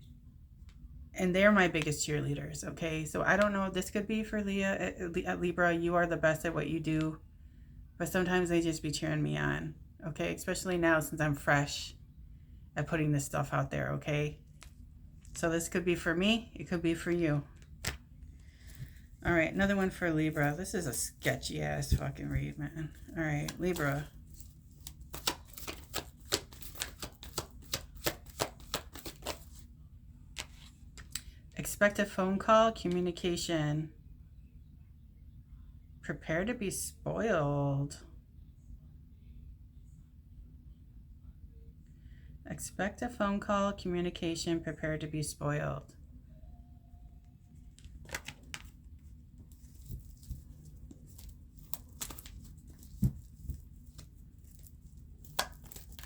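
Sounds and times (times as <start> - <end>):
cards being shuffled: 17.0 - 29.7, 30.3 - 31.3, 47.7 - 56.0
paper rustling: 17.6 - 29.7, 47.6 - 56.0
cards clicking: 24.8 - 29.6, 47.8 - 48.7.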